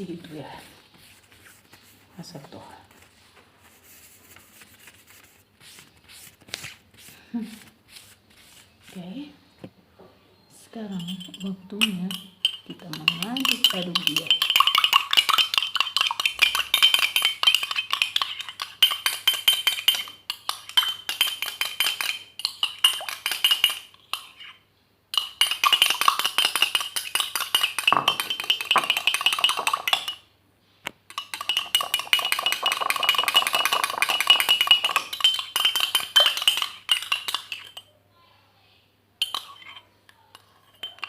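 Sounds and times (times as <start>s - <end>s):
utensil clinking stirring liquid: 10.8s - 30.3s, 31.1s - 37.9s, 39.2s - 41.0s.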